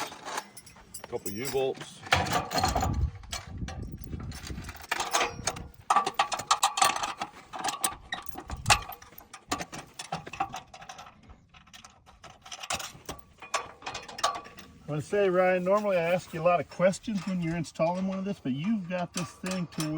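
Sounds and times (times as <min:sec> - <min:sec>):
metal clinking: 0:00.0 - 0:14.9.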